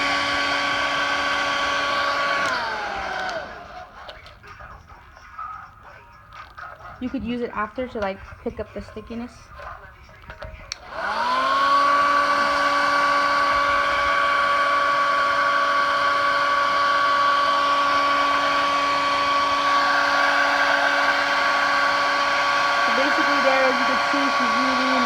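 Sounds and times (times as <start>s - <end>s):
hair dryer motor whining: 0.0s - 6.0s, 10.4s - 25.0s
hair dryer switch click: 2.4s - 3.5s.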